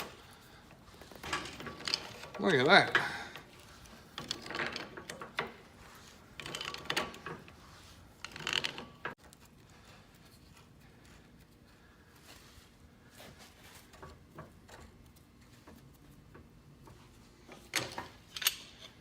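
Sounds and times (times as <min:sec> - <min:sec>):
wrench metal clicking and scraping: 0:17.6 - 0:19.0.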